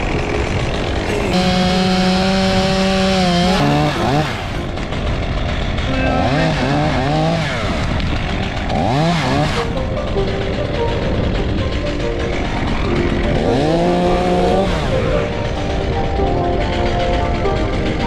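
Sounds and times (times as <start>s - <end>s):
chainsaw running: 0.0s - 18.0s.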